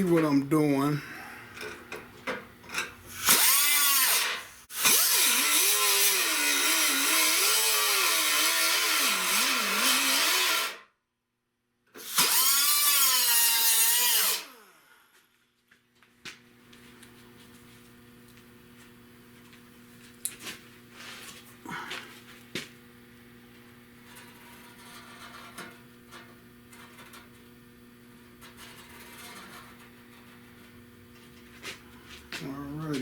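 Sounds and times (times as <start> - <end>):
power tool grinding metal: 2.7 - 10.8, 12.0 - 14.8, 24.0 - 30.4.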